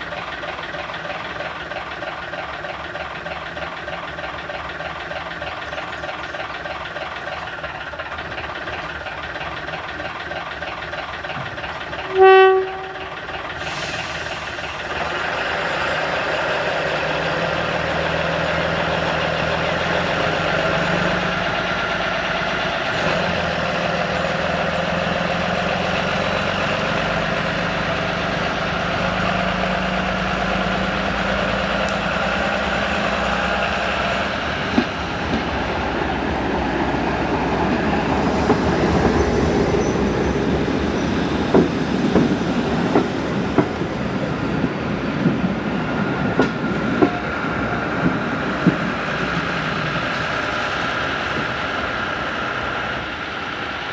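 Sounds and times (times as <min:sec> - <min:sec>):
diesel train engine: 0:00.0 - 0:53.9
train horn blast: 0:12.0 - 0:13.2.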